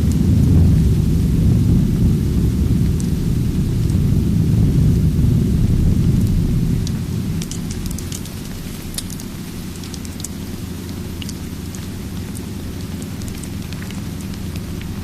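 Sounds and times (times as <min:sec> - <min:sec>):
low rumble of thunder: 0:00.0 - 0:15.0
steady rain: 0:00.0 - 0:15.0
small sharp crackles: 0:06.2 - 0:15.0.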